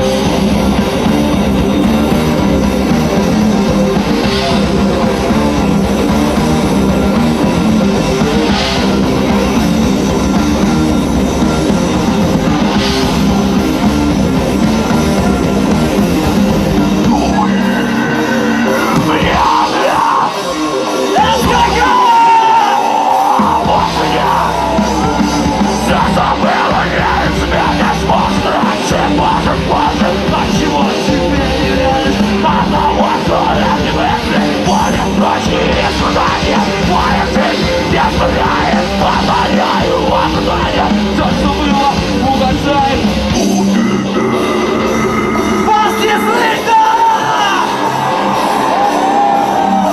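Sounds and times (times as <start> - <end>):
rock band playing live: 0.0 - 49.9
person yelling vocals: 21.2 - 30.8, 43.4 - 47.9.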